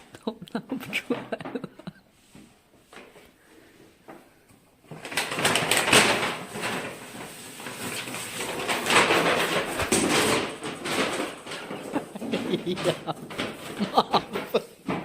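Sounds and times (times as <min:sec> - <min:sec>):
cat struggling rustling and scraping: 0:05.0 - 0:15.0.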